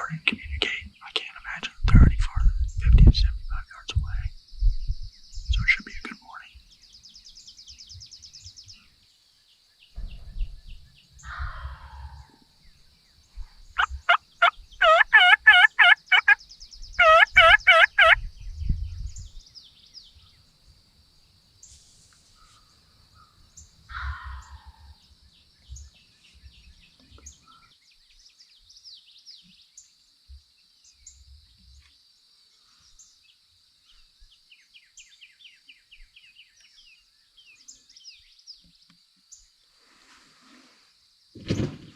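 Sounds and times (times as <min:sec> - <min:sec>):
high trill of birds or insects: 0:02.4 - 0:41.9
turkey calling: 0:13.8 - 0:16.4, 0:17.0 - 0:18.2.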